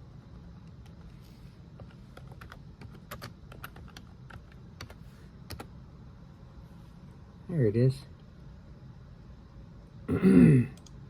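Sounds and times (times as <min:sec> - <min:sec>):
computer keyboard typing: 0:01.8 - 0:05.7.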